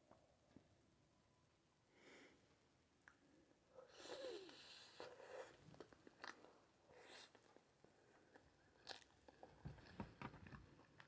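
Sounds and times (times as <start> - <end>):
chewing and biting food: 8.2 - 11.0.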